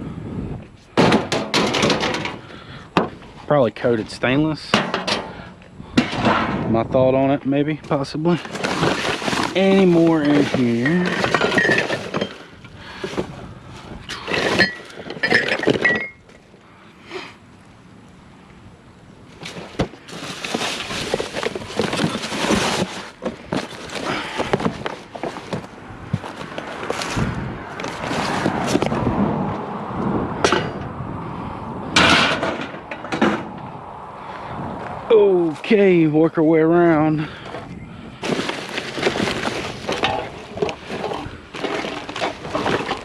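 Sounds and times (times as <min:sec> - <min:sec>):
clattering rattle: 0:01.0 - 0:03.1, 0:08.4 - 0:13.3, 0:14.1 - 0:16.5, 0:19.4 - 0:27.1, 0:38.2 - 0:43.0
metal pans clinking and rattling: 0:08.4 - 0:13.2, 0:14.1 - 0:16.3.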